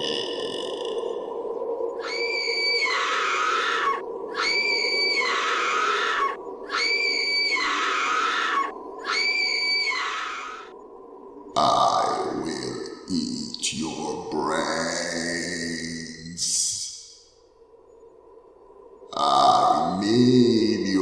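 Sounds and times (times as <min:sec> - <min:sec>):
shrill high screech: 0:02.0 - 0:10.7
steady low drone: 0:10.7 - 0:17.0.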